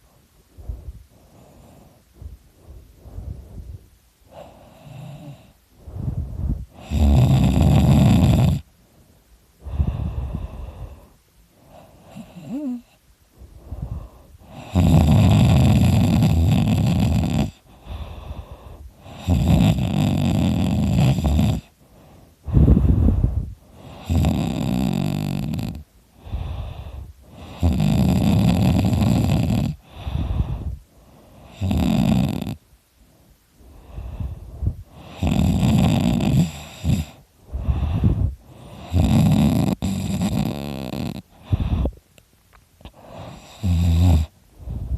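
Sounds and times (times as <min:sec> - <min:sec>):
soft breaths: 0:00.0 - 0:44.9
person snoring loudly: 0:06.8 - 0:08.6, 0:12.1 - 0:13.0, 0:13.8 - 0:18.3, 0:19.0 - 0:21.7, 0:23.8 - 0:30.7, 0:31.5 - 0:32.6, 0:35.0 - 0:41.9, 0:42.9 - 0:44.3.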